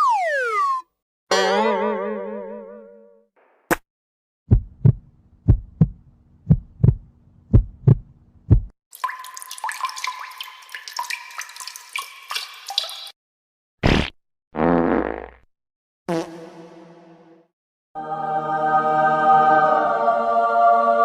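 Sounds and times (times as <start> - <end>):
heartbeat thumps: 4.5 - 8.7
watery trickle with pings: 8.9 - 13.2.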